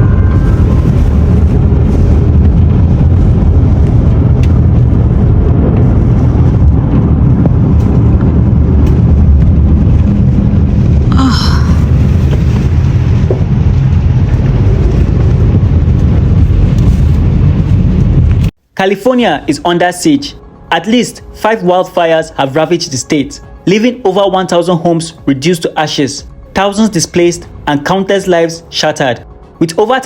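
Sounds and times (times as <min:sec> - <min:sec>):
loud low rumble: 0:00.0 - 0:18.6, 0:19.3 - 0:21.6, 0:26.2 - 0:27.9.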